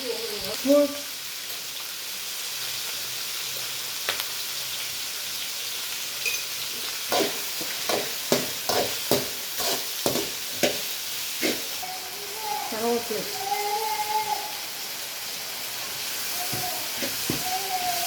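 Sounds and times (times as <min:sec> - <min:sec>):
food sizzling in oil: 0:00.0 - 0:18.0
utensil scraping a pan: 0:07.1 - 0:10.8, 0:11.4 - 0:11.8.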